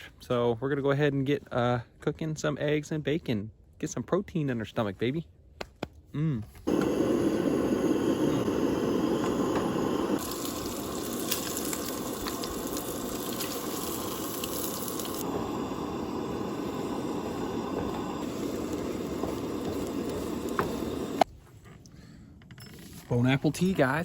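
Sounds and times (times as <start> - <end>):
bacon and eggs sizzling: 6.7 - 21.3.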